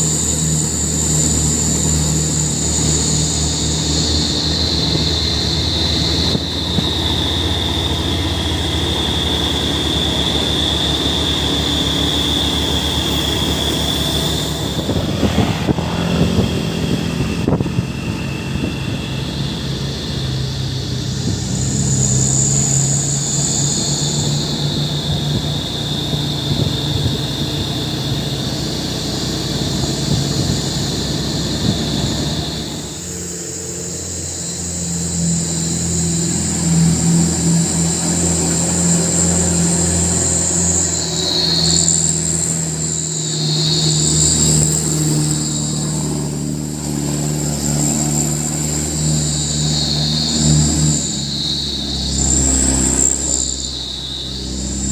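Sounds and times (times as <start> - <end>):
high-pitched whine: 0.0 - 54.9
truck engine running: 0.0 - 54.9.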